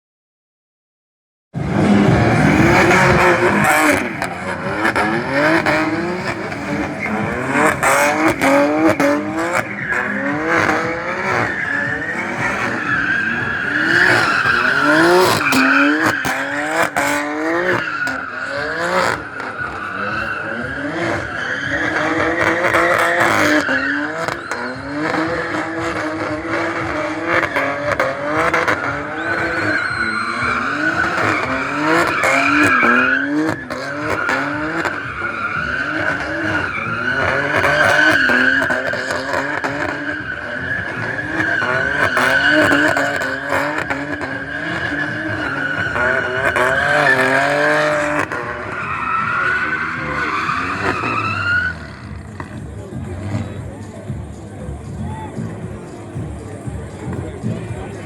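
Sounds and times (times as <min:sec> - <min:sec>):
car engine revving: 0:01.6 - 0:58.0
tyres squealing: 0:01.9 - 0:52.5.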